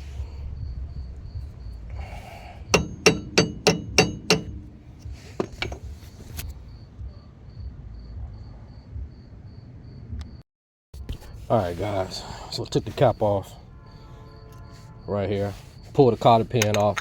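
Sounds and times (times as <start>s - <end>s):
hammer striking metal screwdriver: 2.7s - 6.4s
light metal taps: 2.7s - 6.4s.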